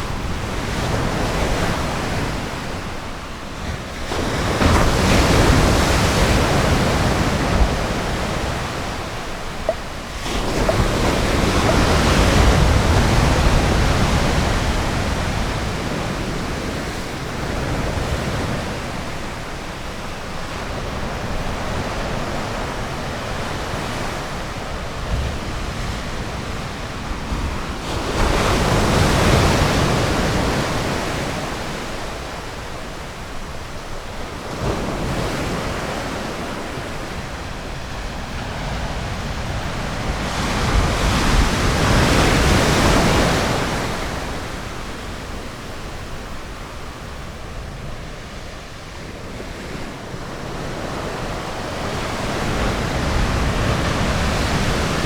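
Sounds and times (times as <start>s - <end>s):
ocean surf washing onto beach: 1.3s - 18.8s
waves breaking: 3.6s - 17.2s.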